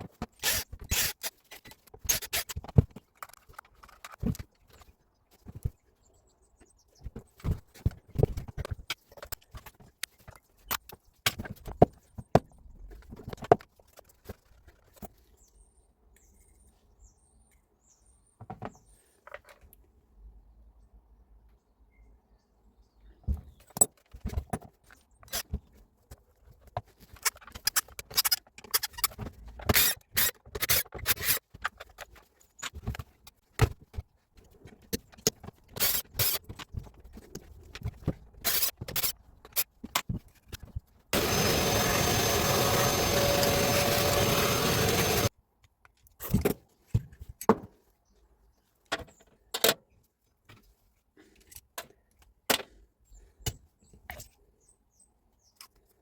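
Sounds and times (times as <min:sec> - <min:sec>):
tools clicking and scraping: 0:00.0 - 0:04.9, 0:27.0 - 0:33.1, 0:34.6 - 0:45.3
loud steady rushing noise: 0:41.2 - 0:45.3.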